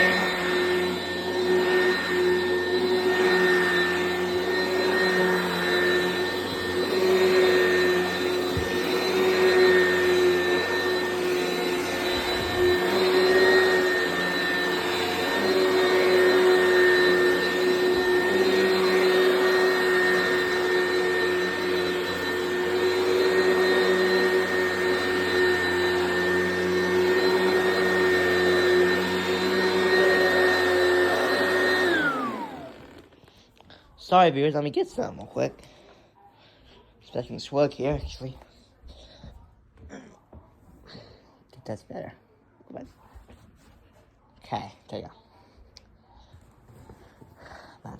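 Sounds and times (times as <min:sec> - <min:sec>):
vacuum cleaner whining: 0:00.0 - 0:35.9, 0:37.1 - 0:39.3.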